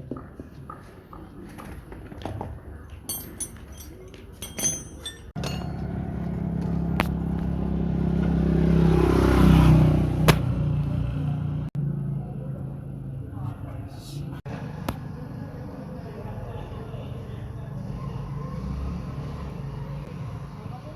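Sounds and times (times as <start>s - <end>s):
motorcycle engine running: 5.4s - 13.2s.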